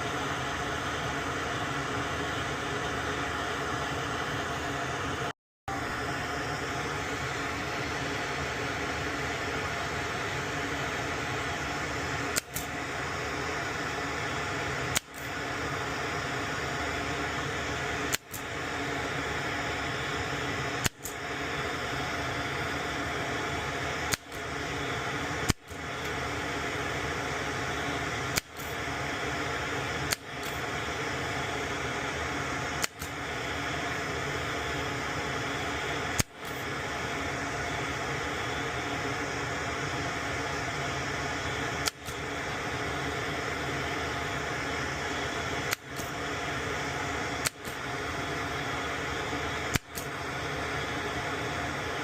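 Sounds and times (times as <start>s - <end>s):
sharp clicks: 12.3s - 12.7s, 20.8s - 21.2s, 24.1s - 24.4s, 28.3s - 28.7s, 32.8s - 33.2s, 41.8s - 42.2s, 45.6s - 46.2s, 47.4s - 47.8s, 49.7s - 50.1s.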